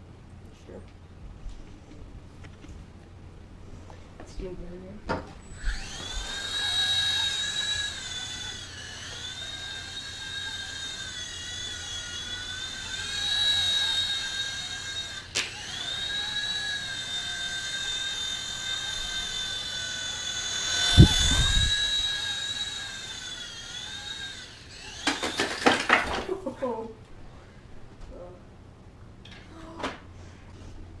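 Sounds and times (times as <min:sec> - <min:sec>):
rc helicopter rotor whining: 0:05.4 - 0:26.8.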